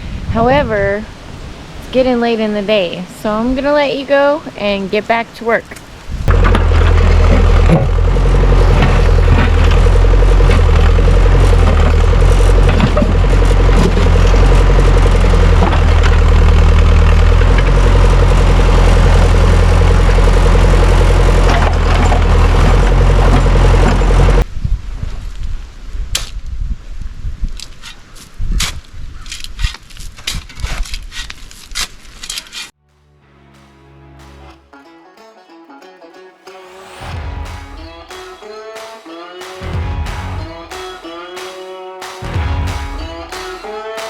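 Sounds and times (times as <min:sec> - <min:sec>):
engine running with deep rumble: 0:06.1 - 0:24.5.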